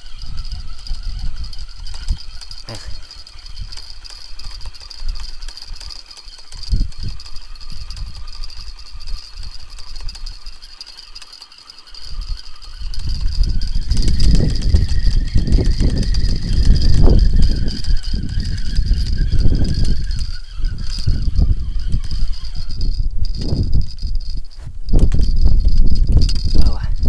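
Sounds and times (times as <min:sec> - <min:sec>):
wind buffeting microphone: 0:00.0 - 0:10.6, 0:12.0 - 0:27.0.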